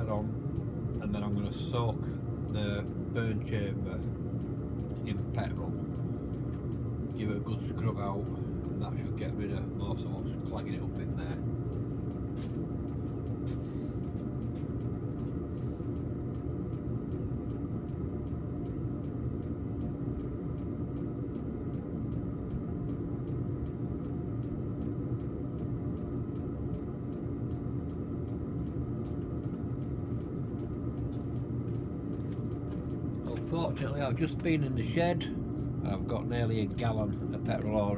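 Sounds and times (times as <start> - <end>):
diesel heater fan rumble: 0.0 - 37.9
faint regular ticking: 0.0 - 37.9.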